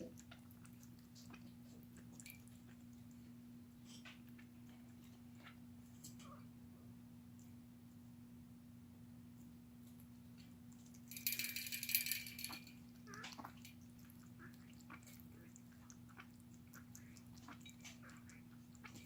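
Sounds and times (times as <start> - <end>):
low room hum: 0.0 - 19.0
rabbit rattling clicks: 11.1 - 12.8.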